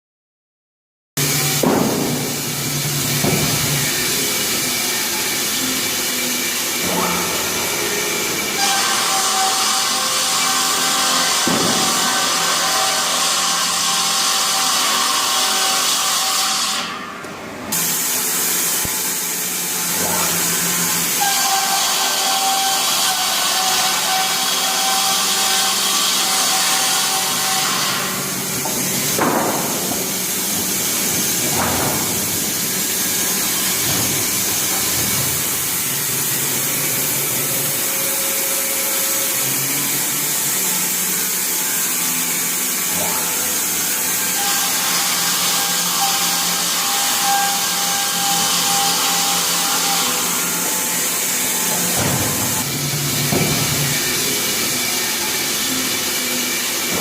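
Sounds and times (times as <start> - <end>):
saw machine hum: 17.7 - 57.0.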